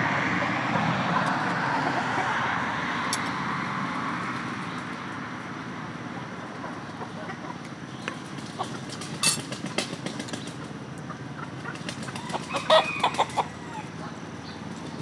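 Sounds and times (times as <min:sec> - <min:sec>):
chickens clucking: 0:06.4 - 0:15.0.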